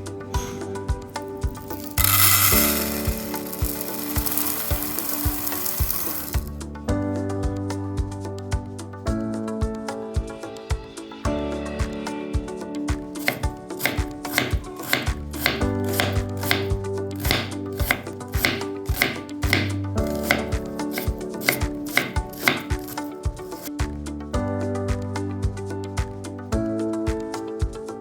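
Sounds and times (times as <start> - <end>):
background music: 0.0 - 28.0
knife chopping on cutting board: 13.2 - 23.7.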